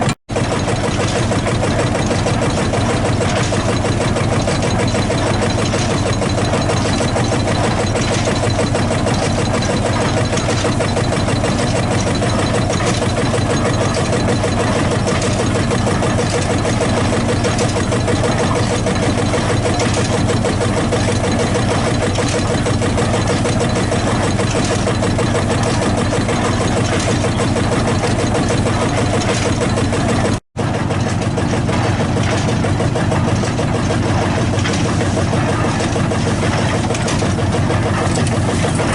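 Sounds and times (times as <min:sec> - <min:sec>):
tractor diesel engine running: 0:00.0 - 0:38.9.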